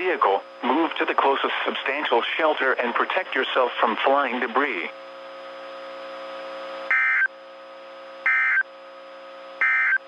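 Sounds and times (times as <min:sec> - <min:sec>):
faint steady hum: 0:00.0 - 0:10.0
buzzy digital data tones: 0:06.9 - 0:07.3, 0:08.2 - 0:08.6, 0:09.6 - 0:10.0.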